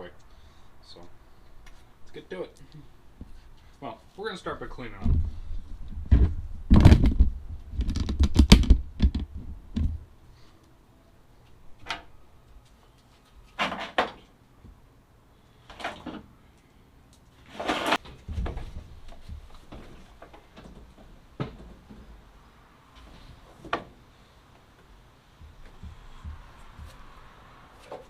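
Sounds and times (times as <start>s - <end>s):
rattling knocks and thumps: 17.8s - 22.2s, 25.4s - 27.0s.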